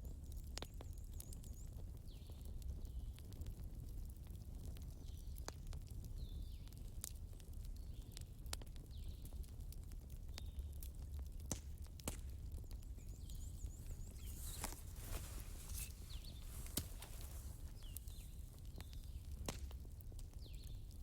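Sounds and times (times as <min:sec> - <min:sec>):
bonfire crackling and popping: 0:00.0 - 0:21.0
small birds chirping: 0:12.5 - 0:19.4, 0:20.3 - 0:21.0.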